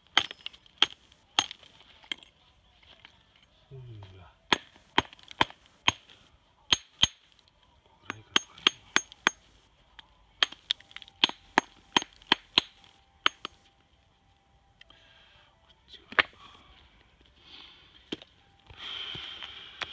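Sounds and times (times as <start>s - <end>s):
hammer striking stone: 0.1s - 1.7s, 4.5s - 7.3s, 8.1s - 9.5s, 10.4s - 13.6s.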